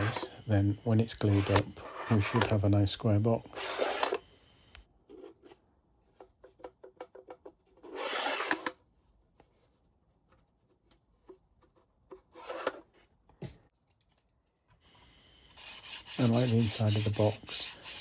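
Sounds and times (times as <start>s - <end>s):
wood scraping: 0.0s - 2.8s, 3.5s - 4.3s.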